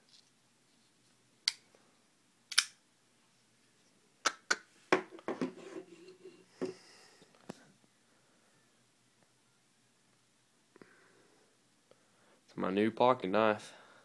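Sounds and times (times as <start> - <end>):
pocket knife clicking open and shut: 2.5 - 2.8.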